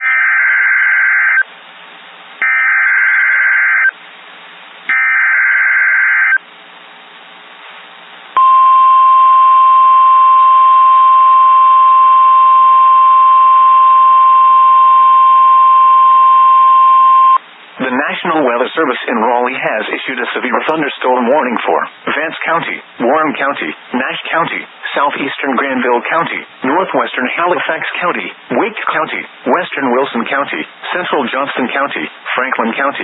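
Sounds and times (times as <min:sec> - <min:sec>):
steady attention tone: 0:08.3 - 0:17.4.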